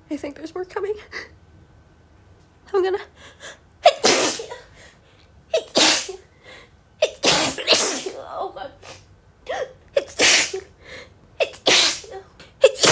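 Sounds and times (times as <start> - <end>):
woman sneezing: 3.9 - 4.7, 5.6 - 6.2, 7.0 - 8.2, 8.8 - 10.7, 11.4 - 12.9.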